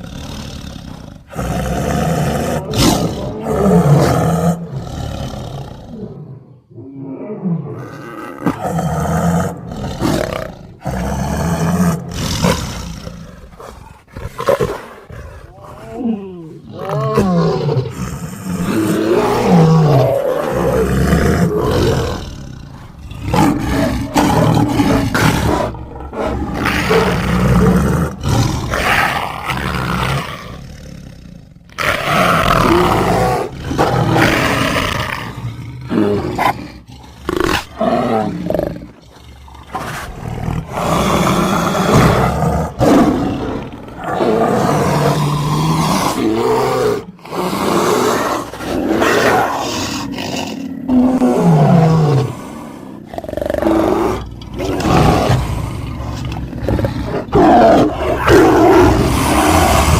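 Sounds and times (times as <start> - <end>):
bear roars: 0.0 - 59.9
big cat roars and snarls: 0.0 - 59.9.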